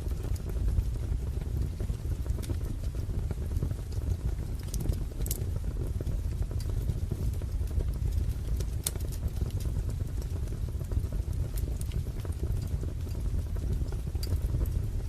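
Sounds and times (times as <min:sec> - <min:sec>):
fire rumbling: 0:00.0 - 0:15.0
fire snaps and pops: 0:00.0 - 0:15.0.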